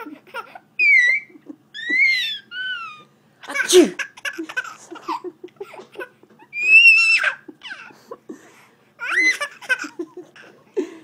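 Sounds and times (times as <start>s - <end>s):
baby laughing: 0.0s - 8.2s, 9.0s - 10.7s
baby squealing: 0.8s - 4.7s, 6.4s - 7.9s, 9.0s - 9.8s.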